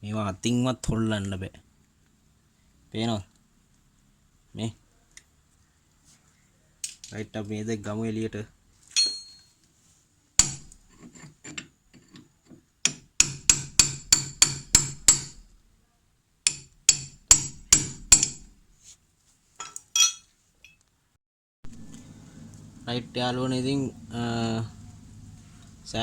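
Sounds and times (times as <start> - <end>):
hammer striking metal: 9.0 - 9.4, 10.4 - 10.8, 12.9 - 15.6, 16.5 - 18.6.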